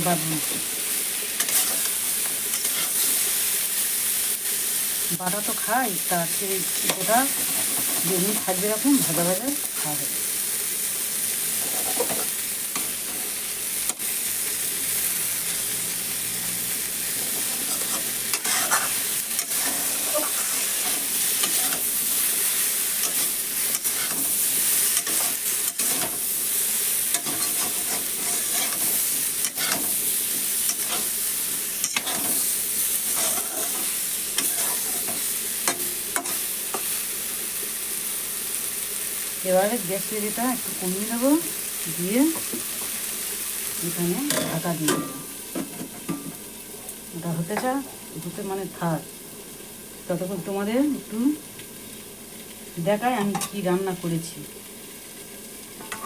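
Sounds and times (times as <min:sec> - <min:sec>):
food sizzling in hot oil: 0:00.0 - 0:56.0
spatula scraping a pan: 0:01.4 - 0:03.4, 0:06.8 - 0:08.6, 0:11.6 - 0:13.4, 0:17.1 - 0:37.0.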